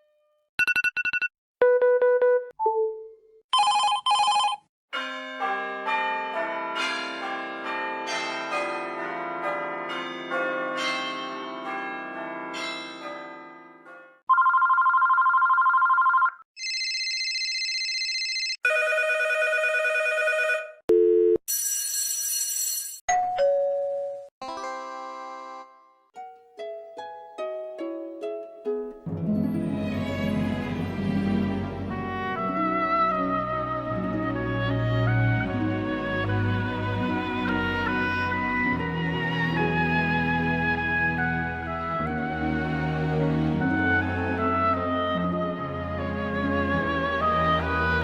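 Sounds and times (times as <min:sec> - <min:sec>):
short electronic beeps: 0:00.6 - 0:02.4
electronic trilling phone rings: 0:03.6 - 0:04.6, 0:14.3 - 0:20.7
melodic ringtone tune: 0:03.6 - 0:04.6.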